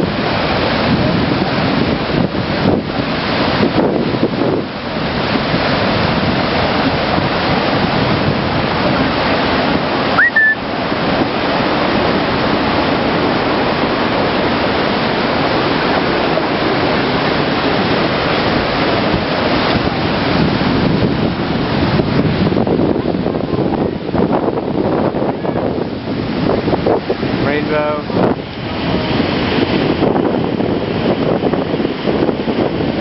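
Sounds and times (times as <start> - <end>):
waterfall rushing: 0.0 - 33.0
short rising chirp: 10.2 - 10.6.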